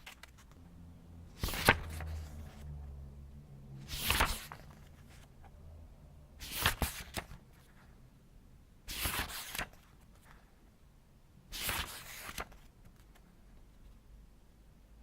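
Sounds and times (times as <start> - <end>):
book pages turning: 0.0 - 0.6, 1.4 - 2.8, 3.8 - 5.5, 6.4 - 7.9, 8.9 - 10.3, 11.5 - 13.3.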